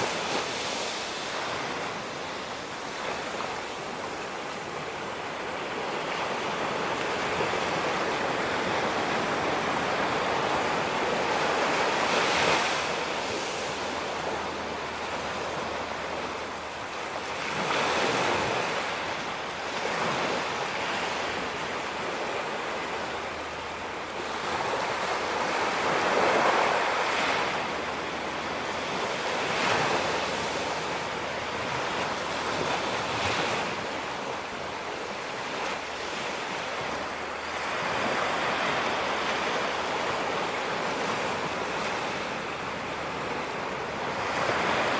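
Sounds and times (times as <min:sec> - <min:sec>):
ocean waves breaking: 0:00.0 - 0:44.9.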